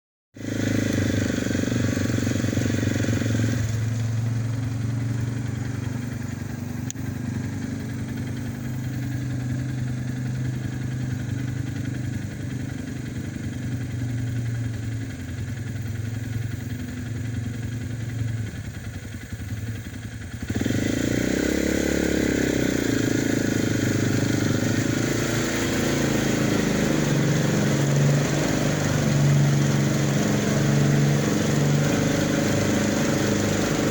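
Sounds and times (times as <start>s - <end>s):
vehicle engine running and revving: 0.4s - 33.9s.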